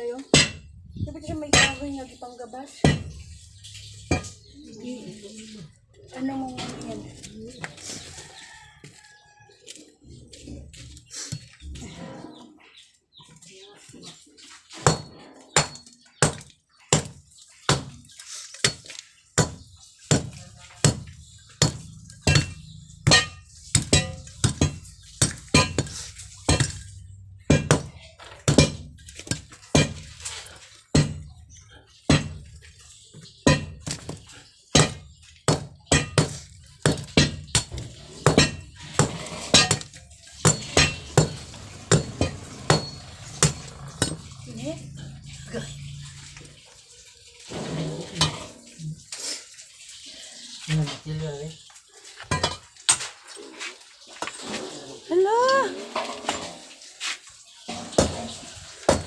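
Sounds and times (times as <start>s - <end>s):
metal tool striking hard material: 0.3s - 0.8s, 1.5s - 2.0s, 2.8s - 4.5s, 14.8s - 31.4s, 32.1s - 32.6s, 33.4s - 44.5s, 57.9s - 59.0s.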